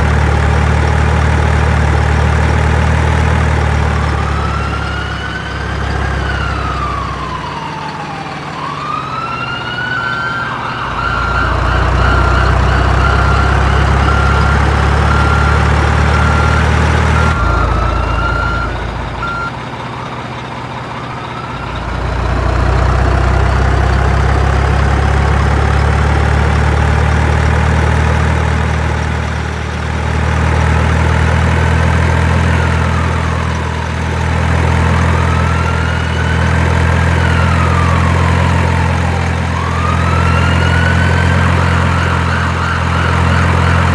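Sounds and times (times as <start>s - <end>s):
low engine hum: 0.0s - 43.9s
siren wailing: 1.2s - 43.9s.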